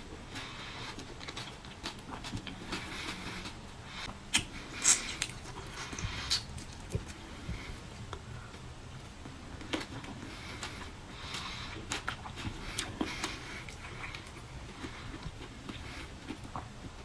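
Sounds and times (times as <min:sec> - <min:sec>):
wet chewing: 0:00.3 - 0:08.2, 0:09.2 - 0:17.0
mouth clicks and smacks: 0:00.9 - 0:07.2.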